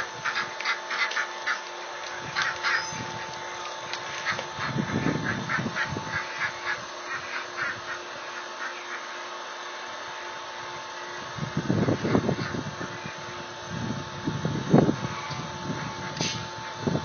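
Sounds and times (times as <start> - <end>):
faint steady hum: 0.0 - 17.0
ducks quacking: 0.2 - 9.2, 11.8 - 13.4.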